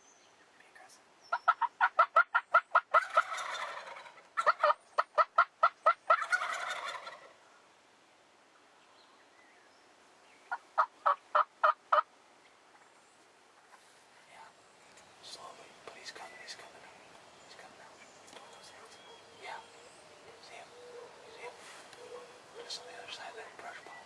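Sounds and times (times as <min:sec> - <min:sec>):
turkey gobble: 0:01.3 - 0:07.4, 0:10.5 - 0:12.1
turkey yelps: 0:01.3 - 0:07.4, 0:10.5 - 0:12.1.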